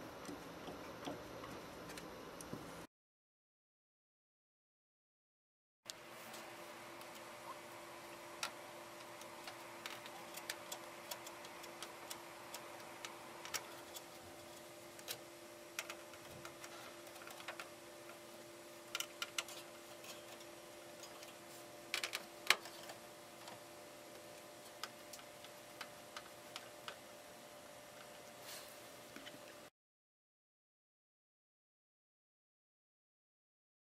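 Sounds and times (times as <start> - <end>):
steady hum: 5.9 - 29.7.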